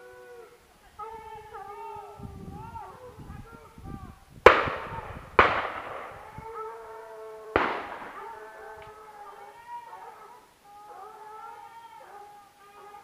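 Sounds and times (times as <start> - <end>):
hounds baying: 0.0 - 13.0
echoing gunshots: 4.4 - 6.6, 7.6 - 8.9.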